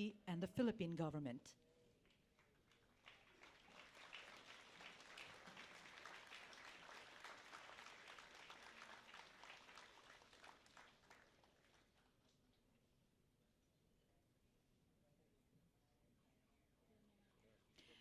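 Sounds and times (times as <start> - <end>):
audience applause: 2.8 - 11.9.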